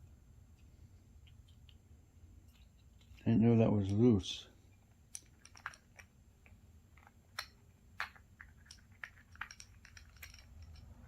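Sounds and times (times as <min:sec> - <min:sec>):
metal parts clicking and tapping: 0:02.4 - 0:11.0.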